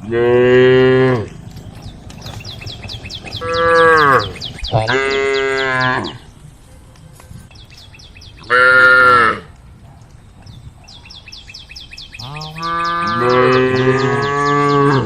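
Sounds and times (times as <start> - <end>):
cattle mooing: 0.0 - 6.3, 8.4 - 9.5, 12.2 - 15.0
bird chirping rapidly: 1.4 - 6.4, 7.5 - 9.0, 10.2 - 15.0.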